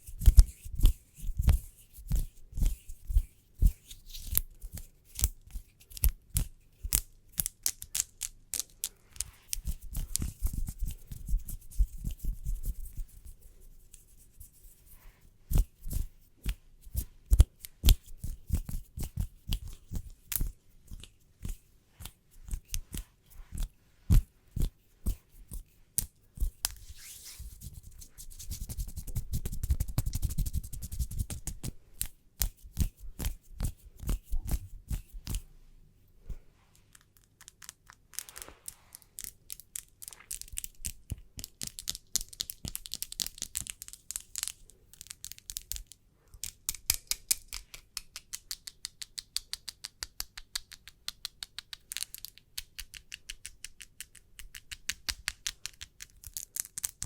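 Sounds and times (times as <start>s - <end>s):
hands rubbing together: 7.6s - 35.5s, 36.3s - 40.7s.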